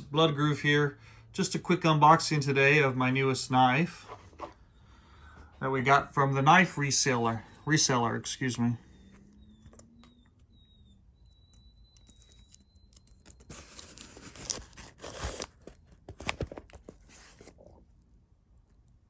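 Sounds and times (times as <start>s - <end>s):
packaging ripping: 12.1s - 17.6s.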